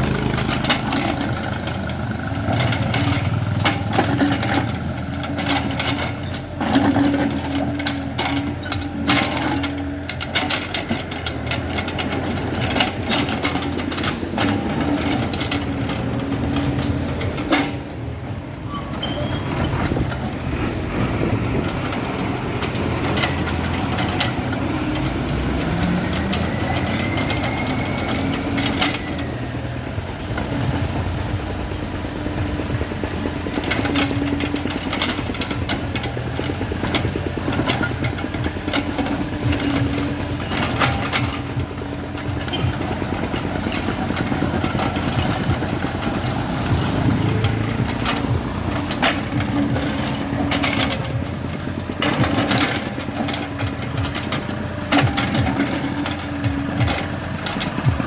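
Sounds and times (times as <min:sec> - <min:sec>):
excavator diesel engine running: 0:00.0 - 0:58.0
sharp metal clanks and knocks: 0:33.4 - 0:58.0.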